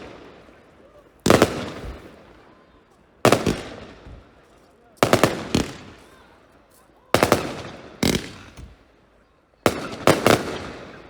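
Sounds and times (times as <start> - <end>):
firework bangs with echo: 1.2 - 2.3, 3.2 - 4.4, 5.0 - 6.2, 7.2 - 8.9, 9.7 - 11.0.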